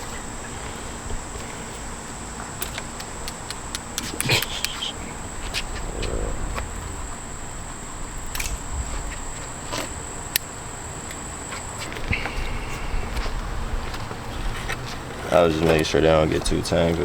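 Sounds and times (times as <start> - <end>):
high-pitched whine: 4.7 - 9.1.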